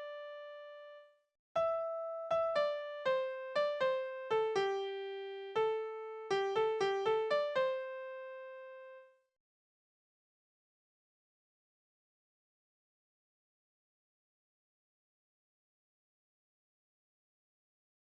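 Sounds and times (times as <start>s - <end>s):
piano melody: 1.6s - 9.0s.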